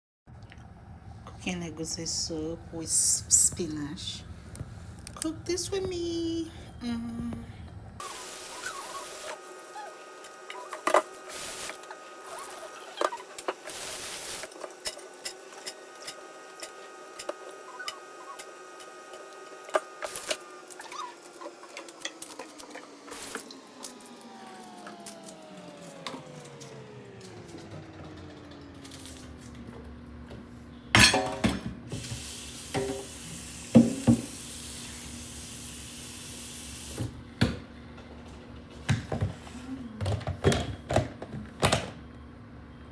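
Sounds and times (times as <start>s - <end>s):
steady hum: 0.4s - 20.8s
water running: 8.0s - 23.6s
pots and utensils knocking: 31.0s - 31.8s.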